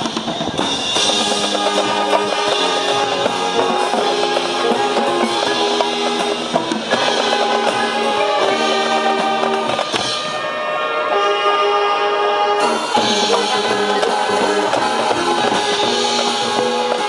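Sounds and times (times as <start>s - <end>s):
snare and bass drums: 0.0s - 10.4s, 12.6s - 17.0s
brass and winds holding chords: 0.6s - 17.0s.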